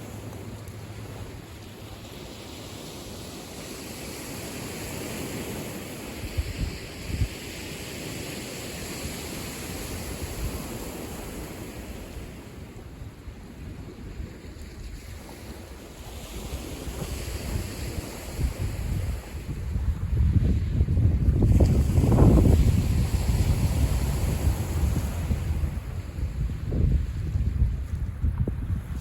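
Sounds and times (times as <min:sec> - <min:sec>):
waves washing on shore: 0:00.0 - 0:29.0
wind buffeting microphone: 0:06.2 - 0:07.6, 0:08.8 - 0:29.0.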